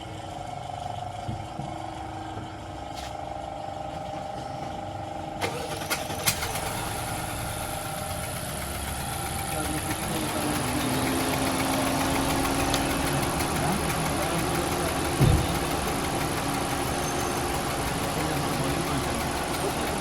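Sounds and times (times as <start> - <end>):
car engine idling: 0.0 - 20.0
short thump: 15.2 - 15.6.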